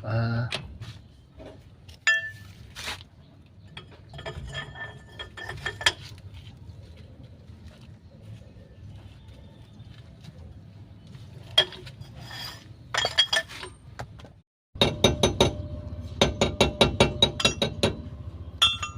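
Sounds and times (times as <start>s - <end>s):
hand tools clinking on metal: 3.7s - 6.2s, 11.5s - 13.8s, 18.6s - 18.9s
low steady hum: 14.8s - 18.9s
ringing metallic taps: 16.2s - 18.9s.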